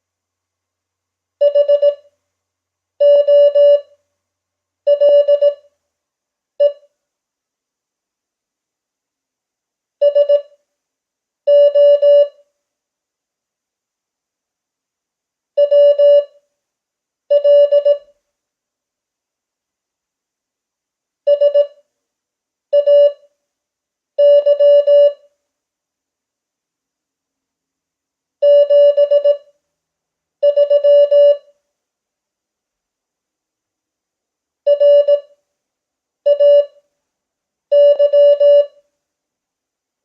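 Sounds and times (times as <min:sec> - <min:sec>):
morse code beeps: 0:03.0 - 0:03.8, 0:04.9 - 0:05.6, 0:10.0 - 0:10.5, 0:17.3 - 0:18.0, 0:22.8 - 0:23.2, 0:24.2 - 0:25.2, 0:30.4 - 0:31.4, 0:34.7 - 0:35.2, 0:36.3 - 0:36.7, 0:37.8 - 0:38.7.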